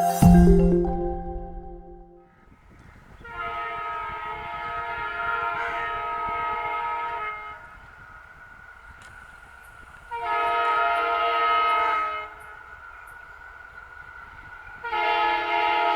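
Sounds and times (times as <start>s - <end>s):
intro music: 0.0s - 2.3s
diesel locomotive horn blast: 3.2s - 7.9s, 10.0s - 12.7s, 14.8s - 15.9s.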